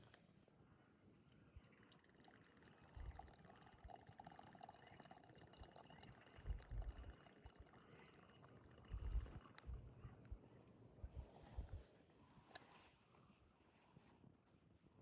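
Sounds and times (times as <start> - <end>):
liquid being poured: 1.6 - 9.6.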